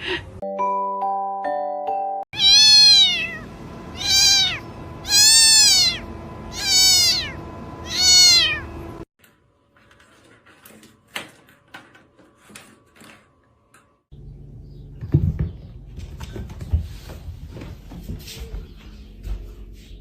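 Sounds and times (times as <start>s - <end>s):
cat meowing: 2.4s - 8.7s.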